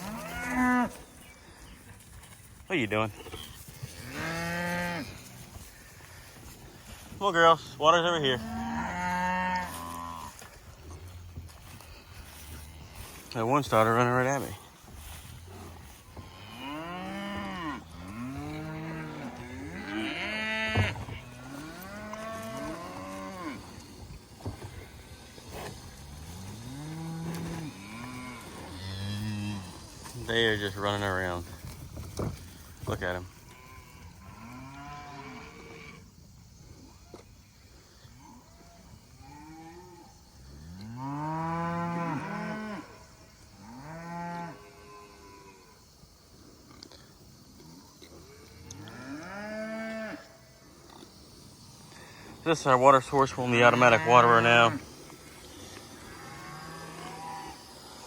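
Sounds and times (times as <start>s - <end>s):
cattle mooing: 16.3s - 23.8s, 55.9s - 57.8s.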